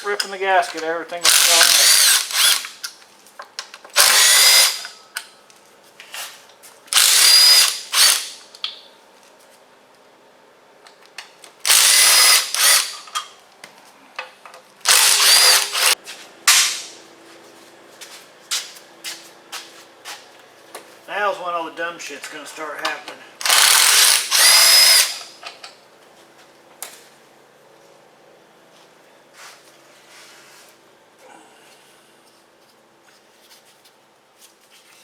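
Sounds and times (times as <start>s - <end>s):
cordless power tool bursts: 1.2s - 2.8s, 3.9s - 4.9s, 7.0s - 8.4s, 11.7s - 13.1s, 14.8s - 16.0s, 23.4s - 25.4s.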